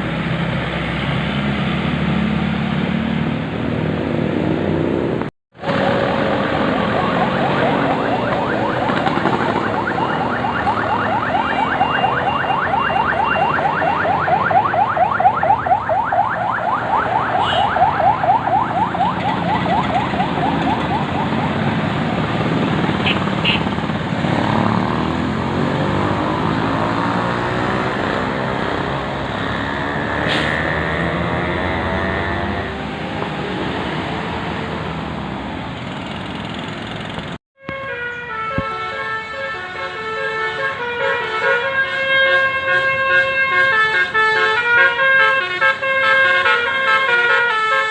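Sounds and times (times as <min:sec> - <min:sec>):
traffic: 0:00.0 - 0:47.9
bus multi-tone horn: 0:17.4 - 0:17.8, 0:23.0 - 0:23.8, 0:37.6 - 0:47.9
high held horn tone: 0:17.4 - 0:17.8, 0:37.6 - 0:47.9
bus rumble: 0:18.9 - 0:37.4.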